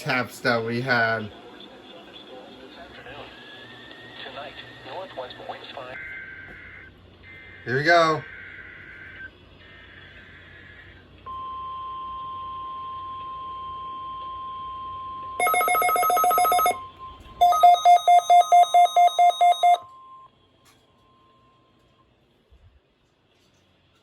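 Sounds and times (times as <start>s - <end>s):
steady high alarm tone: 15.4s - 19.9s
pulsing electronic alarm beeps: 15.4s - 20.3s.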